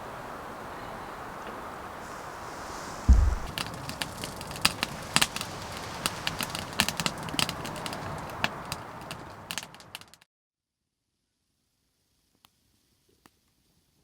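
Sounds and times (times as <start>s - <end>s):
fire hiss: 0.0s - 10.1s
wood fire crackling: 1.6s - 10.2s.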